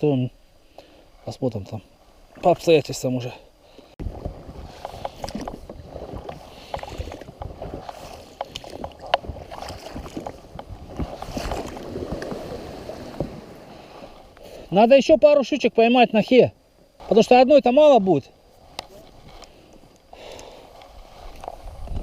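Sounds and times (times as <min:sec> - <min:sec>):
boat knocks and clicks: 0:04.0 - 0:12.4
oar strokes: 0:04.0 - 0:14.7, 0:18.3 - 0:22.0.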